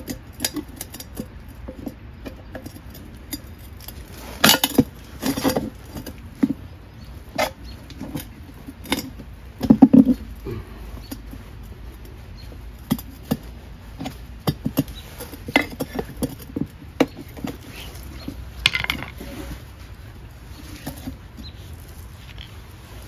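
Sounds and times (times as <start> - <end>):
tools clicking and scraping on rim: 0.0 - 22.6.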